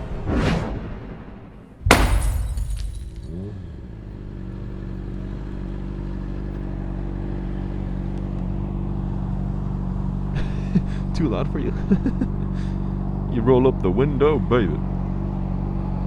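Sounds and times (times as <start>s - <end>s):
glass shattering crash: 1.8s - 3.8s
motorcycle engine at low revs: 1.9s - 16.0s.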